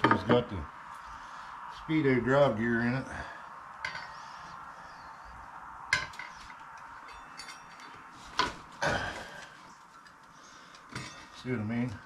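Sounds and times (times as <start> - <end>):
metal parts clinking: 6.0 - 8.0.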